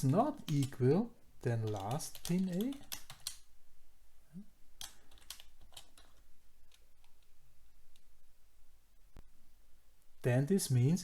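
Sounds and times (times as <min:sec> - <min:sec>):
computer keyboard typing: 0:00.1 - 0:00.8, 0:01.6 - 0:03.5, 0:04.8 - 0:07.3.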